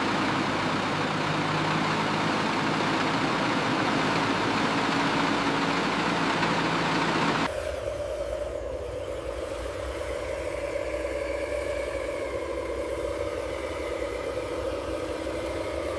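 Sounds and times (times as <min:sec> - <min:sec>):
heavy vehicle engine running: 0:00.0 - 0:07.5.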